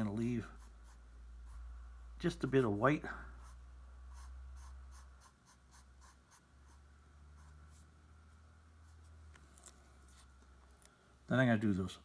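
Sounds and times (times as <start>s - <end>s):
low steady hum: 0.0s - 12.0s
marker scratching on paper: 0.4s - 1.6s, 3.4s - 7.9s.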